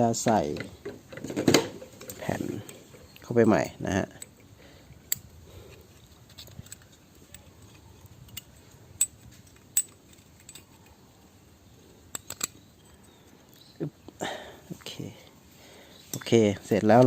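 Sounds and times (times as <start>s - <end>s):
metal parts clicking and clinking: 0.2s - 11.0s, 12.1s - 13.7s.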